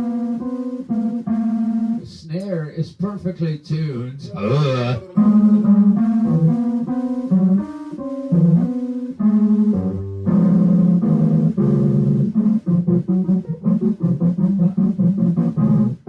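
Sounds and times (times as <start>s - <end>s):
instrumental music with bass: 4.3s - 16.0s.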